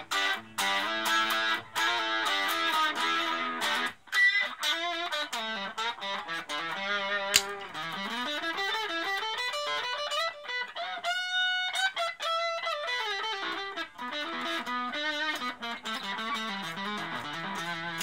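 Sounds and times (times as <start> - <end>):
electric guitar melody: 0.0 - 18.0.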